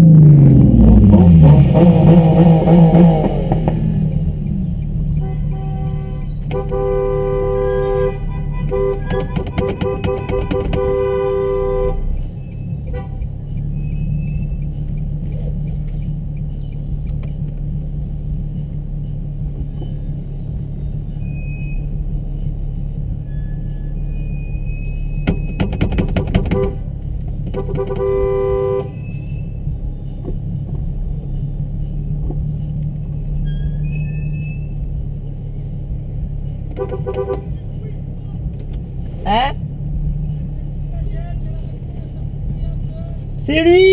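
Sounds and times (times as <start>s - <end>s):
car engines rumbling: 0.0s - 43.9s
two-tone car horn honking: 5.0s - 14.6s, 23.2s - 32.4s, 36.7s - 37.7s.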